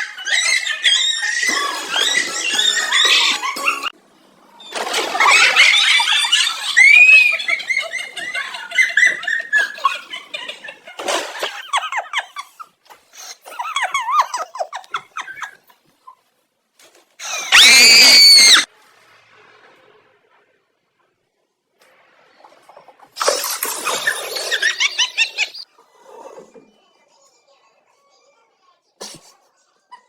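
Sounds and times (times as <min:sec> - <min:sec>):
animal squealing: 0:00.0 - 0:03.9, 0:17.2 - 0:18.7.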